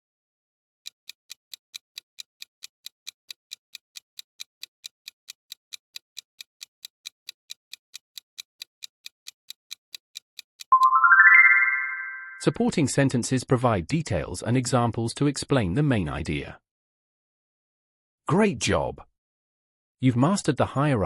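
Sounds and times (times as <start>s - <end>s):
clock-like ticking: 0.8s - 10.8s.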